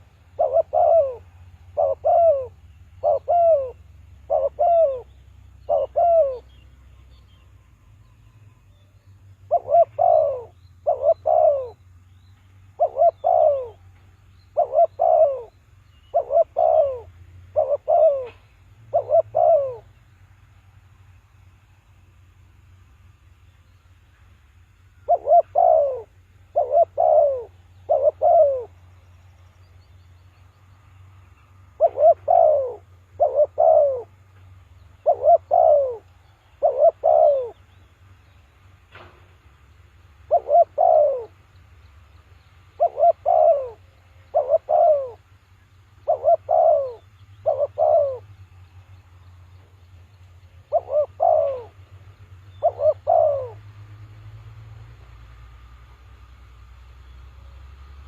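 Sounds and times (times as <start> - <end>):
dove cooing: 0.0 - 6.7, 9.4 - 11.8, 12.7 - 20.0, 25.0 - 29.0, 31.7 - 37.8, 40.1 - 41.4, 42.7 - 45.3, 45.9 - 48.3, 50.6 - 53.8.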